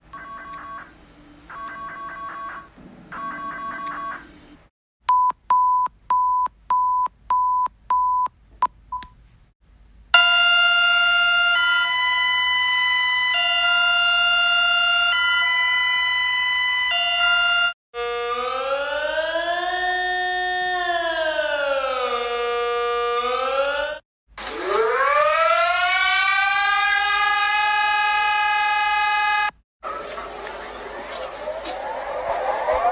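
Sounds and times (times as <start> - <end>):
siren winding up: 0.2 - 4.6, 10.2 - 29.6
two-pitch alarm tone: 0.2 - 4.6, 10.2 - 20.7.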